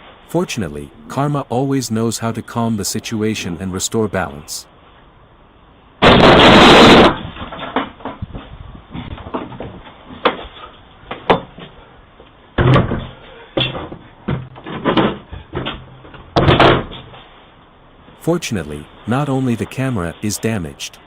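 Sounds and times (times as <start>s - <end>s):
loud burst of noise: 6.0s - 7.4s.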